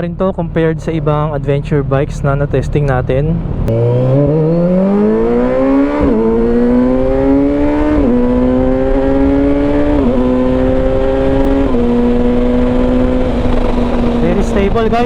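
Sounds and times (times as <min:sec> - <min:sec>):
motorcycle engine accelerating: 0:03.4 - 0:15.0.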